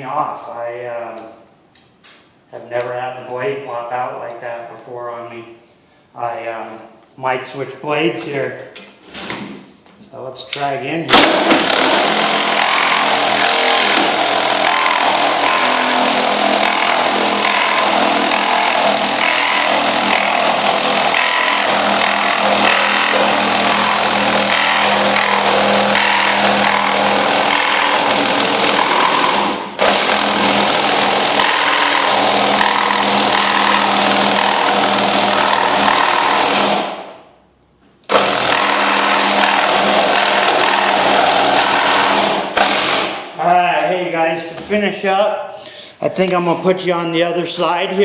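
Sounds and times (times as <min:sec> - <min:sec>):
reciprocating saw cutting board: 0:11.5 - 0:36.9, 0:38.1 - 0:43.2.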